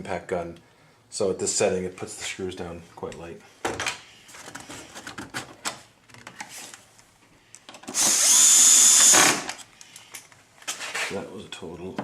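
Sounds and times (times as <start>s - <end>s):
cordless screwdriver whine: 7.9s - 9.6s.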